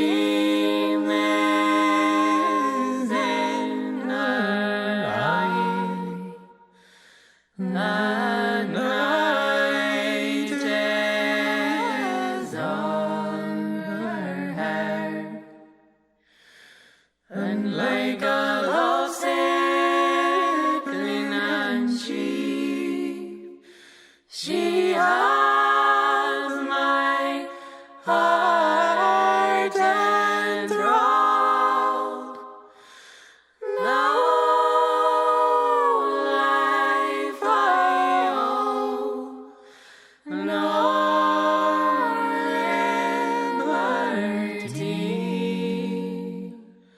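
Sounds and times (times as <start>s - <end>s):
breaths: 6.6s - 7.6s, 16.1s - 17.3s, 23.6s - 24.3s, 27.5s - 28.0s, 32.6s - 33.6s, 39.5s - 40.3s.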